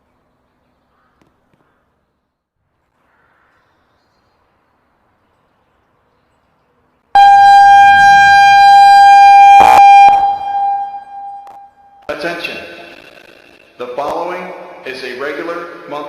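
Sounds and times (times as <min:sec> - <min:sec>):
outdoor warning siren tone: 0:07.2 - 0:13.8.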